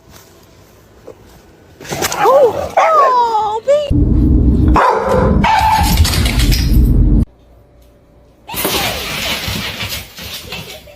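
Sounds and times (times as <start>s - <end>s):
loud rumbling noise: 3.9s - 7.3s.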